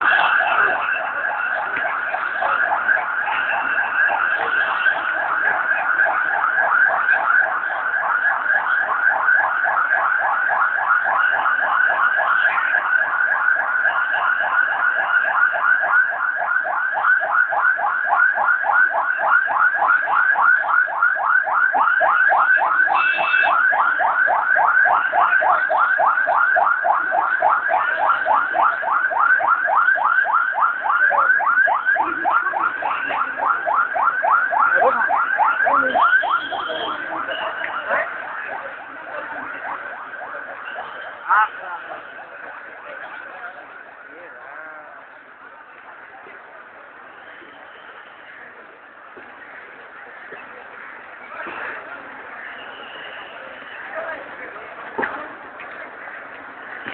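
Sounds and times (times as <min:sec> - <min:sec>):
electronic alarm siren warbling: 0:00.0 - 0:41.5.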